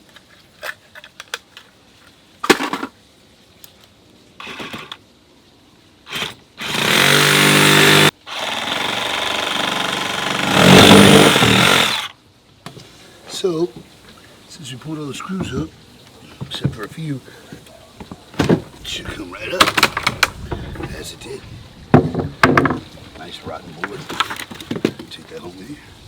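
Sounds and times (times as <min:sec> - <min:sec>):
knocks on wood: 0:21.9 - 0:22.9.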